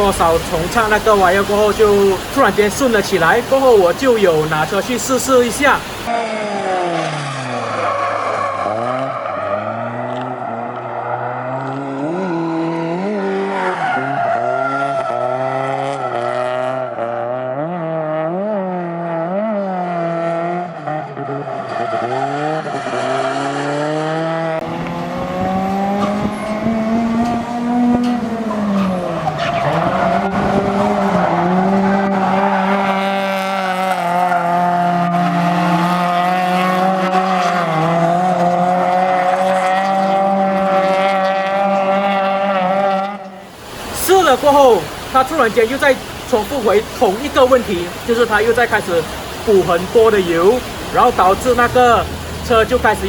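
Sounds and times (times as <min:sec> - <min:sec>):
car engine revving: 0:00.0 - 0:53.0.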